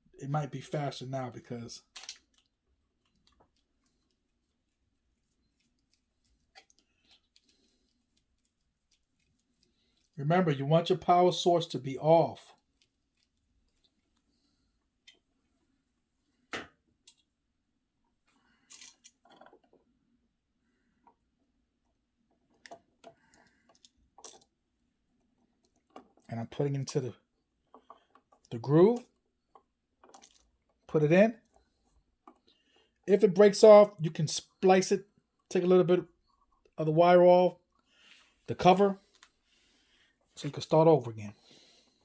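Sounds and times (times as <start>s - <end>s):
wires rustling: 1.8s - 10.2s.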